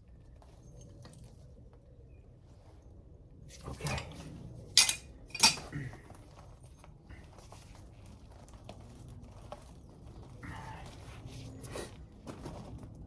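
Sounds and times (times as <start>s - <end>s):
metallic clanks: 4.8s - 5.7s.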